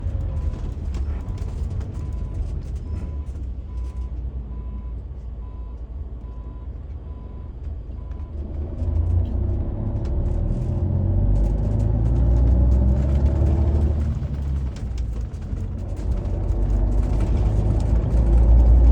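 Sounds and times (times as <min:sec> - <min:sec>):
bus engine pulling away: 0:00.0 - 0:18.9.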